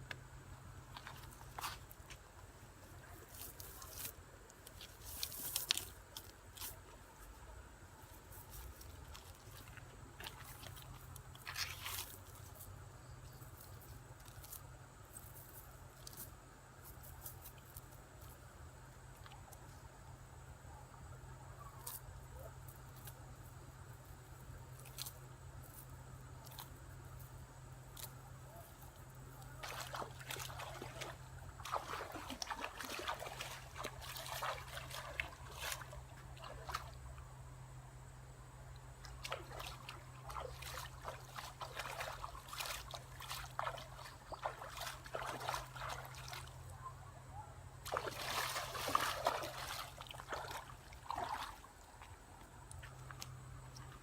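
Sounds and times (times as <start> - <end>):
shallow water sloshing and trickling: 8.1 - 12.7, 28.8 - 37.2, 39.0 - 46.7, 47.8 - 54.0.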